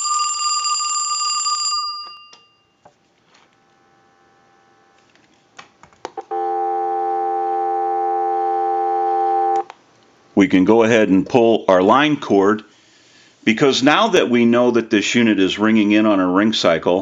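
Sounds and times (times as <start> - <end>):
telephone bells ringing: 0.0 - 2.8
telephone dial tone: 6.2 - 9.7.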